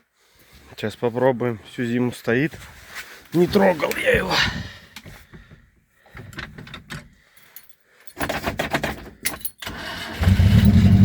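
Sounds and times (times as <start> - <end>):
keys jangling: 9.2 - 9.6.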